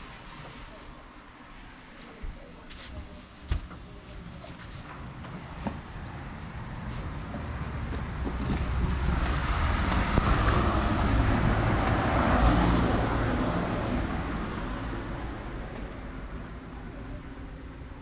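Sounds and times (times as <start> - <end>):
vehicle passing by: 6.6 - 15.7.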